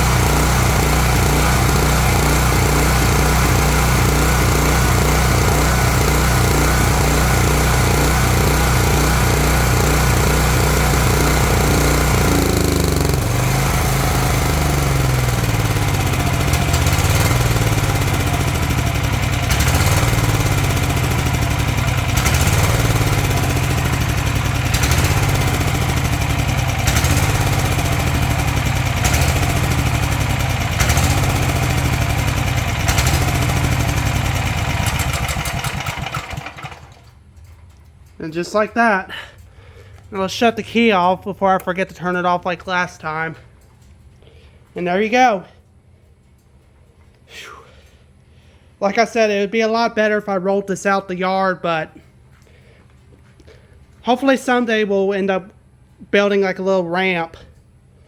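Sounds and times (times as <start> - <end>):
generator engine running unevenly: 0.0 - 38.2.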